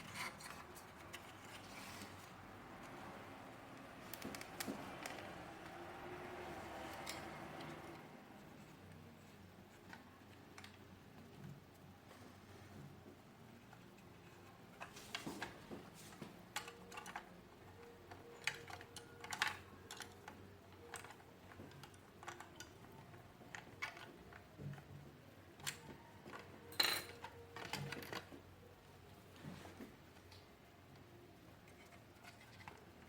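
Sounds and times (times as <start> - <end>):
plastic parts clicking and tapping: 3.7 - 5.8, 13.6 - 28.5.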